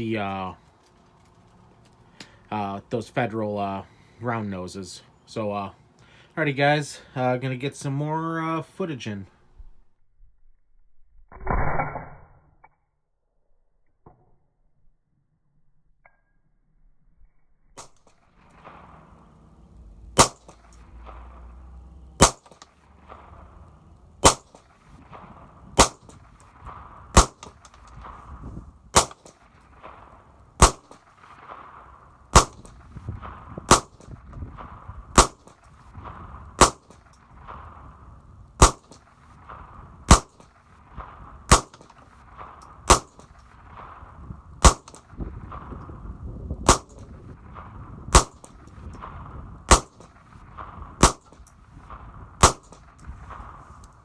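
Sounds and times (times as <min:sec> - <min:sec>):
rifle shots: 0:17.8 - 0:54.0.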